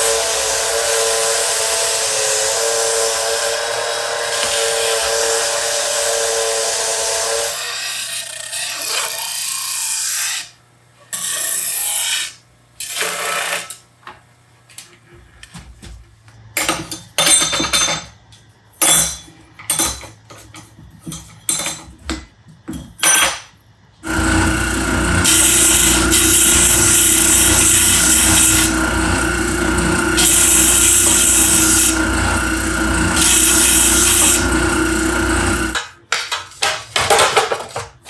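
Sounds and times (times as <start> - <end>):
power tool running: 0.0 - 7.6, 24.0 - 35.9.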